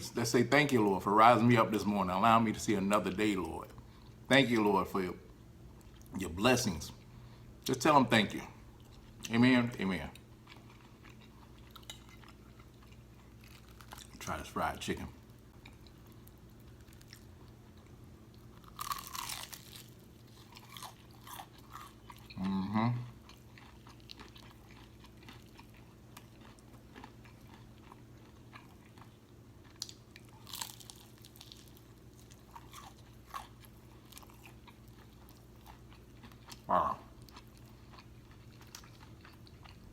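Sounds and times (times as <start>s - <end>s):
crunching fried chicken: 9.8s - 15.0s, 15.6s - 39.9s.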